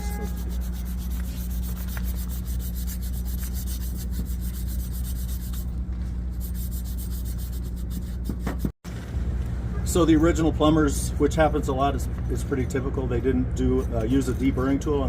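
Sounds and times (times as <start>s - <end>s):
scraping strokes on pipe: 0.0s - 5.7s
low hum: 0.0s - 12.6s.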